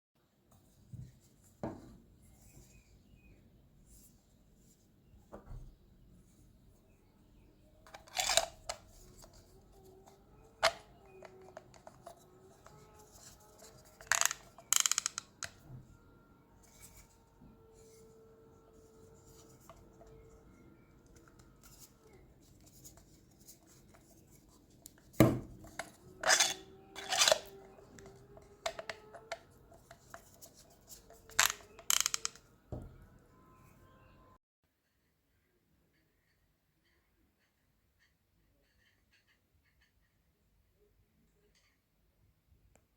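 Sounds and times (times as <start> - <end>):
plastic ratchet clicking: 13.6 - 15.5, 31.2 - 32.4.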